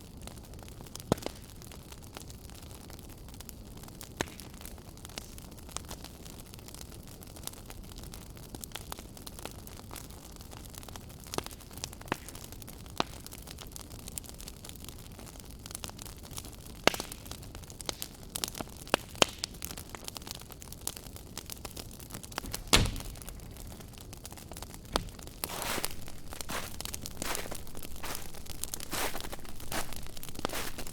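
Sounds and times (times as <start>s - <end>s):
wood fire crackling: 15.6s - 30.9s.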